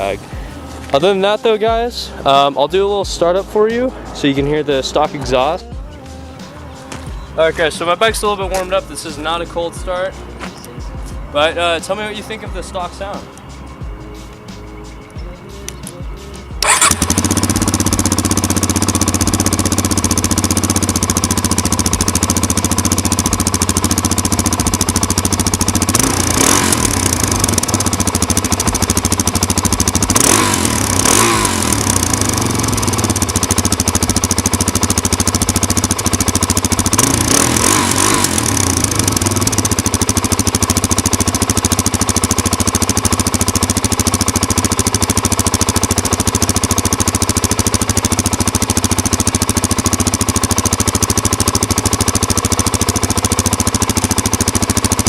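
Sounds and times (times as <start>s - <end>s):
motorcycle engine idling: 0.0s - 55.0s
engine throttle blips: 16.6s - 55.0s.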